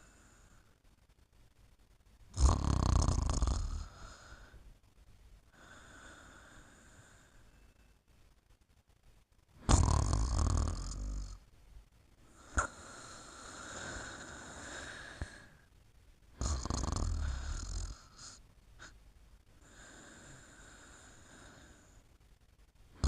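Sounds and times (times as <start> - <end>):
loud low snores: 2.3 - 4.5, 9.6 - 11.4, 16.4 - 18.9.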